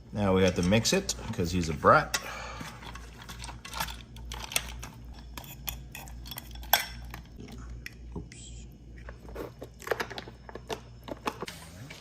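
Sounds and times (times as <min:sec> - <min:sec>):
utensil clinking and scraping bowl: 0:00.2 - 0:07.4.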